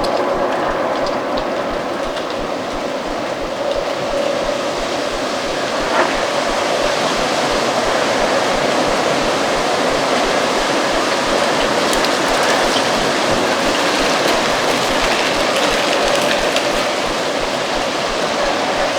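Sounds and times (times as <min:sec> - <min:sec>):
strong wind blowing: 0:00.0 - 0:18.9
dry leaves rustling: 0:08.7 - 0:18.9.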